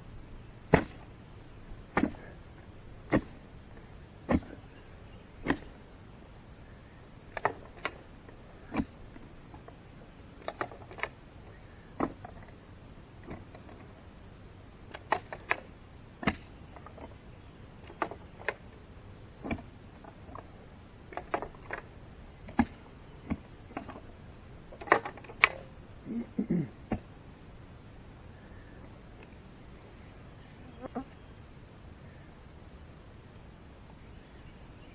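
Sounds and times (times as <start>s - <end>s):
digging tool striking rocky soil: 0.7s - 1.1s, 1.9s - 2.4s, 3.0s - 3.4s, 4.2s - 4.6s, 5.4s - 5.8s, 8.6s - 9.0s, 12.0s - 12.4s, 14.9s - 17.1s, 19.4s - 20.4s, 22.4s - 24.0s.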